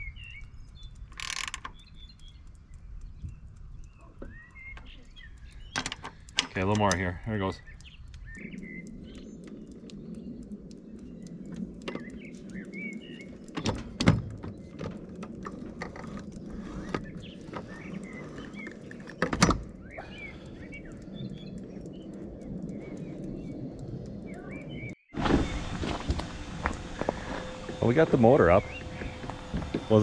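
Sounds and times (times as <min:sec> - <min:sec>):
birds chirping: 0:00.0 - 0:30.0
steady low hum: 0:19.8 - 0:30.0.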